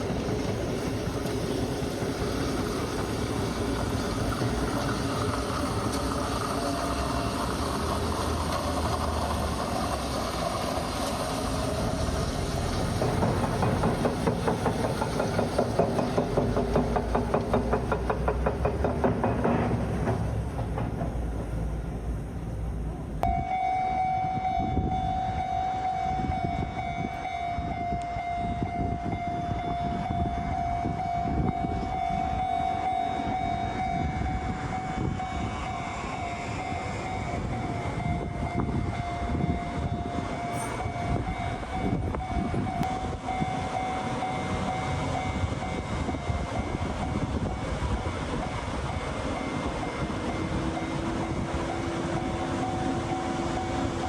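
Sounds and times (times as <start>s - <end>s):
train rumble and rail clatter: 0.0s - 54.0s.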